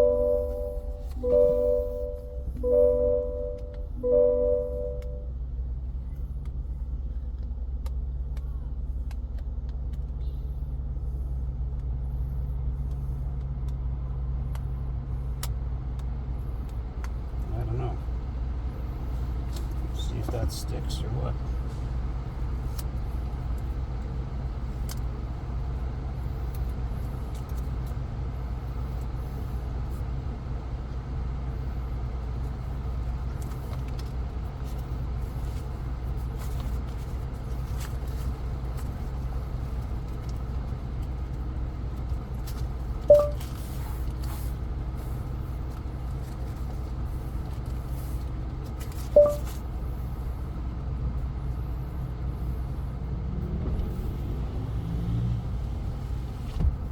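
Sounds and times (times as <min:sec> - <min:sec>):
short electronic beeps: 0:00.0 - 0:05.3, 0:43.1 - 0:43.4, 0:49.2 - 0:49.6
low hum inside truck cab: 0:00.0 - 0:56.9.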